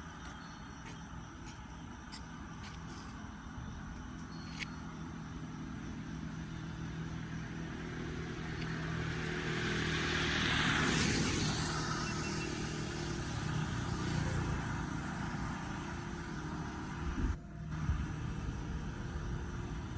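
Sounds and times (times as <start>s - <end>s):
low engine hum: 0.0s - 19.9s
motor vehicle passing: 6.1s - 19.9s.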